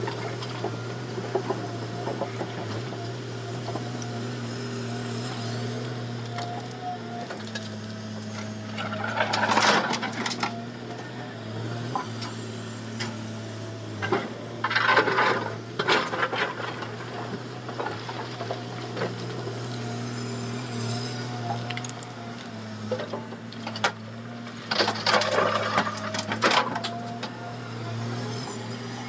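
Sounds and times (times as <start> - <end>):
excavator diesel engine droning: 0.0 - 29.0
scraping and clatter: 6.4 - 10.6, 14.0 - 19.7, 22.8 - 27.4.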